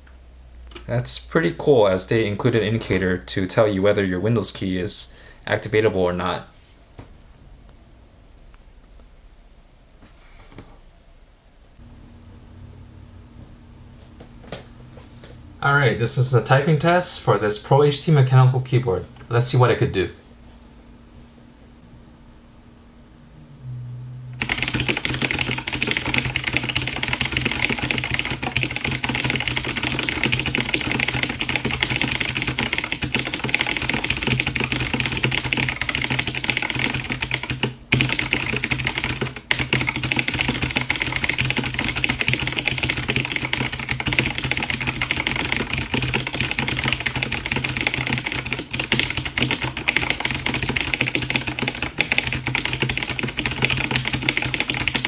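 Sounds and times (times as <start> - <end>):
steady low hum: 0.0 - 55.0
fast typing on mechanical keyboard: 24.4 - 55.0.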